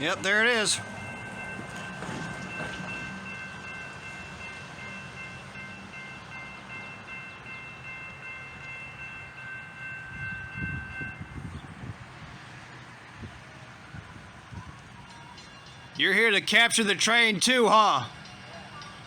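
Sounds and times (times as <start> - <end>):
low rumble of train: 0.0 - 19.0.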